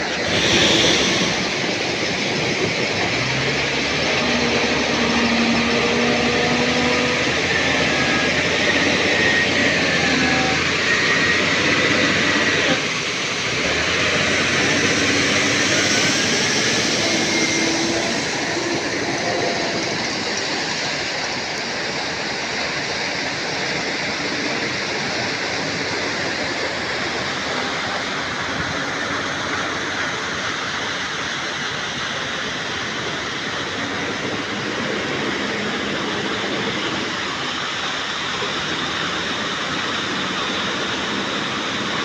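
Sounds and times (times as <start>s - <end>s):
squeal-like tones: 14.2s - 20.7s.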